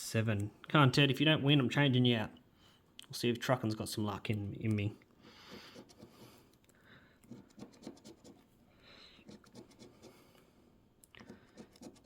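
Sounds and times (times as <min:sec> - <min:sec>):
coin scratching lottery ticket: 0:09.2 - 0:10.1, 0:11.3 - 0:12.0.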